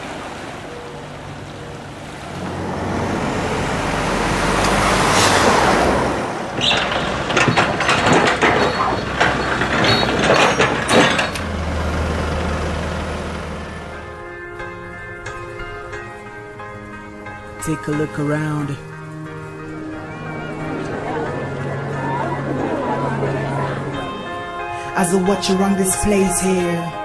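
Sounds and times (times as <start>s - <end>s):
large vehicle passing: 0.0s - 14.4s
low engine hum: 0.0s - 14.4s
clattering knocks and rattles: 1.3s - 14.2s.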